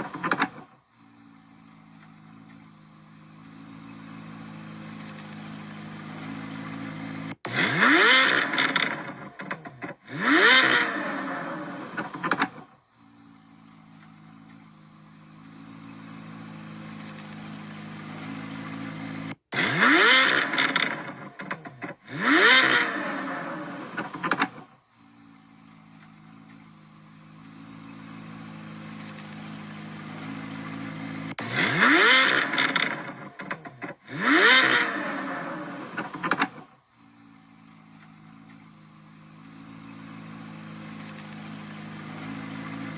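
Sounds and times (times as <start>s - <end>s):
car engine revving: 3.4s - 12.7s, 15.6s - 24.7s, 27.5s - 36.7s.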